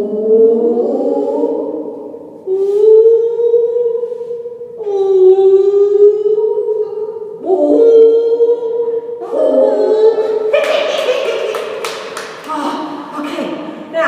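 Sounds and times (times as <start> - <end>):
people imitating whale calls: 0.0 - 11.0.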